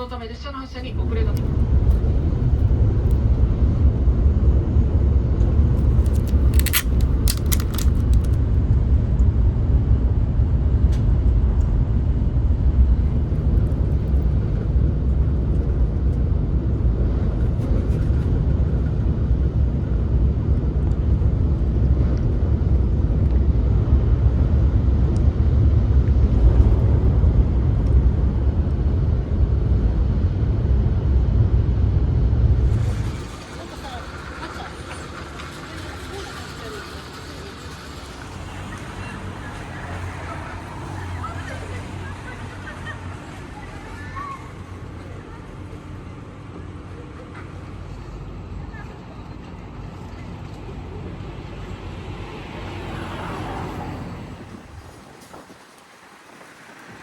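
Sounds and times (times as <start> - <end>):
train cabin rumble: 0.0 - 57.0
clicks: 5.8 - 8.4.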